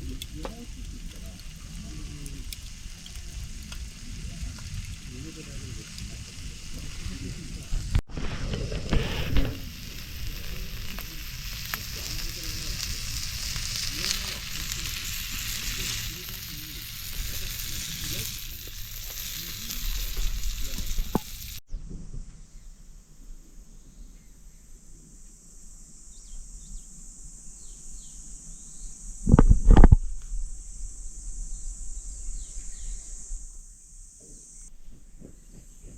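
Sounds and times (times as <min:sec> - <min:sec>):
insects chirping: 0:00.0 - 0:08.0, 0:08.9 - 0:21.6, 0:22.4 - 0:35.9
meat sizzling on griddle: 0:00.0 - 0:21.6.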